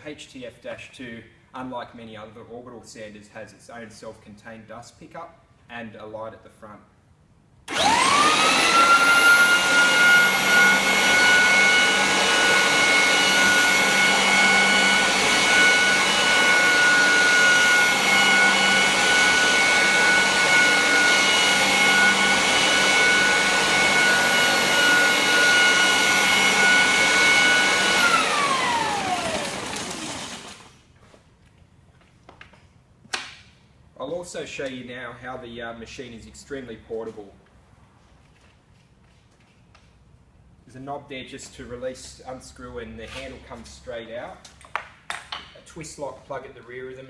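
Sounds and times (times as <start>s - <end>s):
floor sander motor whine: 7.7s - 30.7s.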